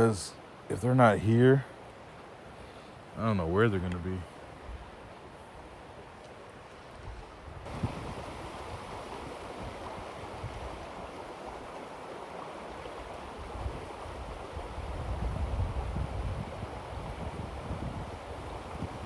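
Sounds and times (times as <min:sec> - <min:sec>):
creek water rushing: 0:00.0 - 0:19.0
wind buffeting microphone: 0:07.0 - 0:11.7, 0:12.8 - 0:19.0.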